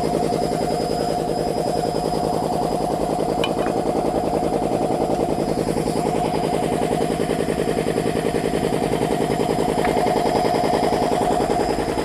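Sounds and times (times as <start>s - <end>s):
air compressor pulsing: 0.0s - 12.0s.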